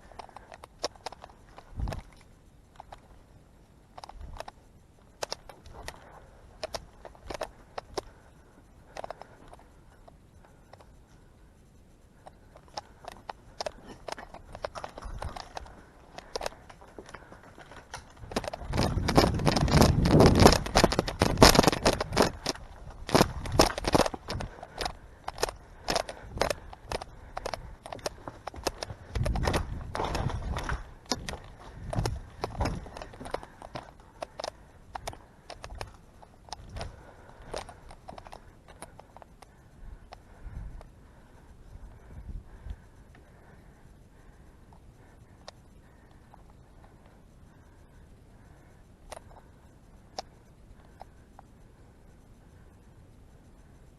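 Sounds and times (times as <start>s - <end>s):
crackling and rustling: 0.0s - 53.9s
handling clicks and knocks: 12.2s - 40.3s.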